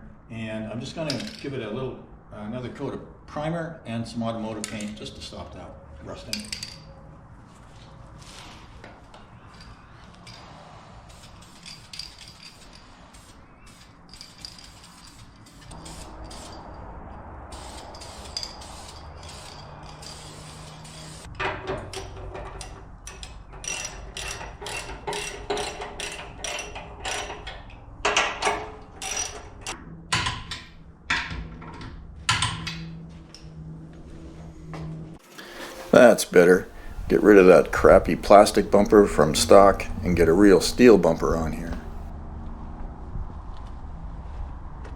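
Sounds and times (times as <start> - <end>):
ratchet wrench clicking: 17.5 - 21.3
low steady hum: 35.4 - 42.1.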